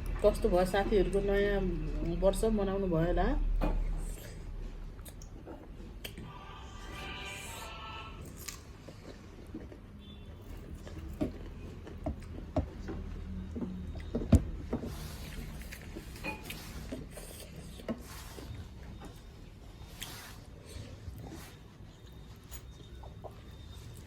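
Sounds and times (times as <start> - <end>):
chewing and mouth smacks: 4.0 - 6.3.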